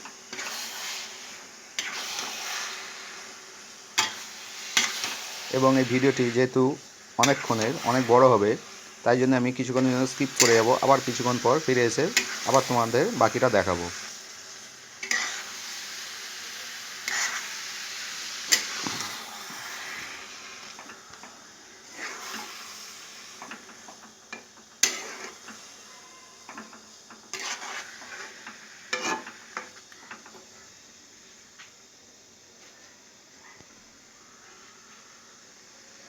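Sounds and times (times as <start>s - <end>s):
coconut sizzling in oil: 0.0s - 36.0s
spatula scraping and knocking pan: 23.4s - 25.6s, 26.5s - 29.8s.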